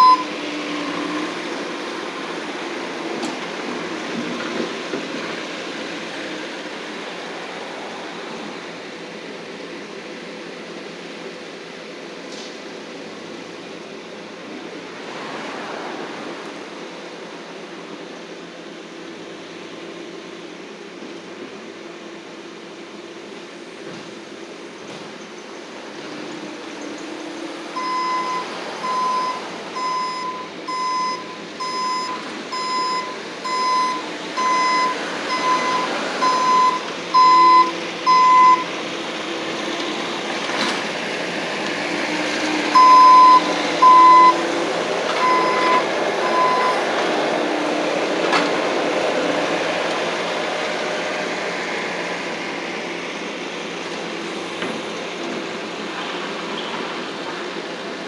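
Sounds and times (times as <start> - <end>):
reversing alarm beeping: 0.0 - 0.4, 27.8 - 38.8, 42.7 - 46.9.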